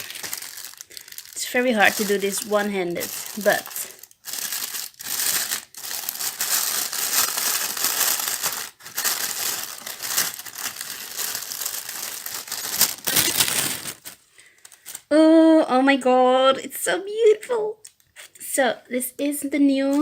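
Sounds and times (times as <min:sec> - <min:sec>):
plastic packaging crinkling: 0:00.0 - 0:15.1.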